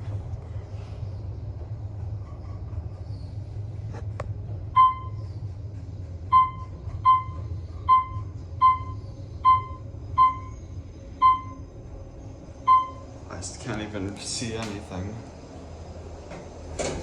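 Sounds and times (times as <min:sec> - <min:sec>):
elevator hum: 0:00.0 - 0:17.0
short electronic beeps: 0:06.3 - 0:10.6, 0:12.7 - 0:13.0.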